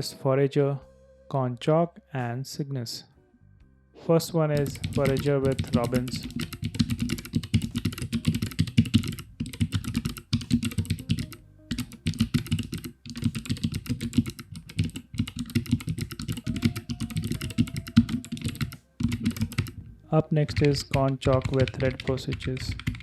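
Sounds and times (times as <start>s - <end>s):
fast typing on mechanical keyboard: 4.6s - 19.8s, 20.4s - 23.0s.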